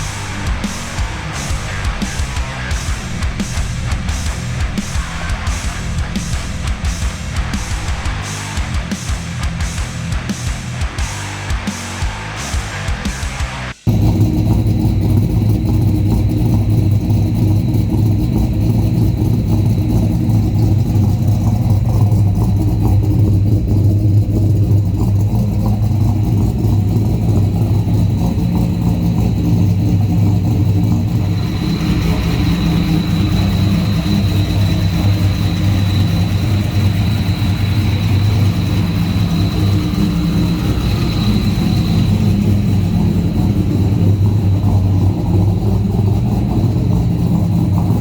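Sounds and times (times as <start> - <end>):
car engine running: 0.0 - 48.0
thin high whine: 13.9 - 48.0.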